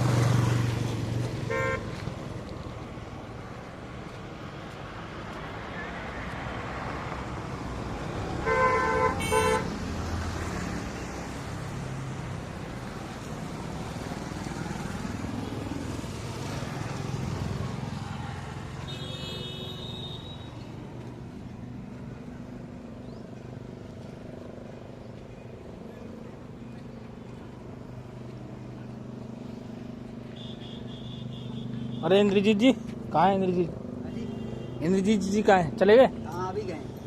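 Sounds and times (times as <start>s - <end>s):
road traffic: 0.0s - 37.0s
vehicle horn honking: 1.5s - 1.9s, 8.4s - 9.7s, 18.8s - 20.6s, 30.3s - 32.3s, 34.1s - 35.2s.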